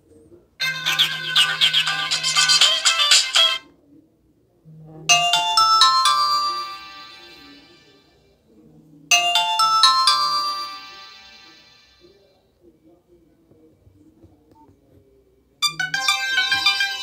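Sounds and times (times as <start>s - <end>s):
mobile phone ringtone: 0.6s - 3.6s, 5.1s - 7.8s, 9.1s - 12.0s, 15.6s - 17.0s.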